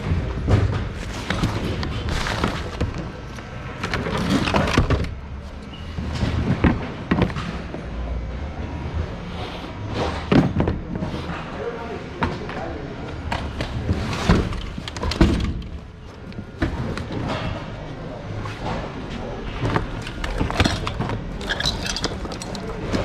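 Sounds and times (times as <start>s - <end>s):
goods knocking and clattering: 19.6s - 23.0s.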